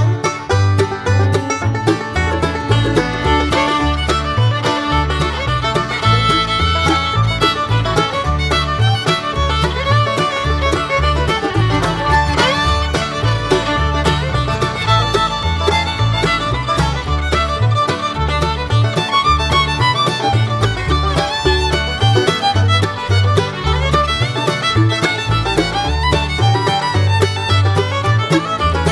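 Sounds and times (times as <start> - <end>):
fiddle-led bluegrass music: 0.0 - 28.9.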